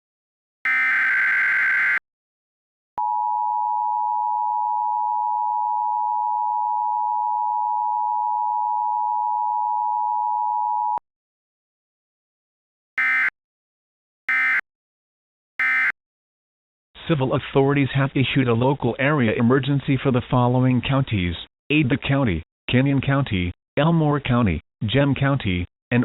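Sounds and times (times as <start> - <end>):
digital header data burst: 0.7 - 2.0, 13.0 - 13.3, 14.3 - 14.6, 15.6 - 15.9
two-tone attention signal: 0.7 - 2.0, 13.0 - 13.3, 14.3 - 14.6, 15.6 - 16.0.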